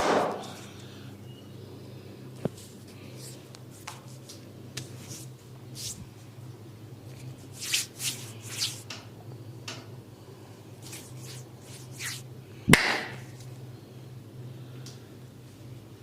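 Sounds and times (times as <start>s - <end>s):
hands rubbing skin and hair: 2.5s - 6.2s, 7.1s - 8.9s, 10.8s - 12.2s
sharp smack: 12.7s - 13.2s.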